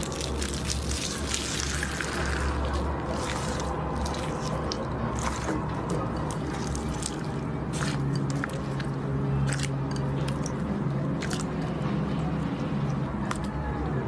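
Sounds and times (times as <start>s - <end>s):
slime squishing by hand: 0.0s - 13.5s.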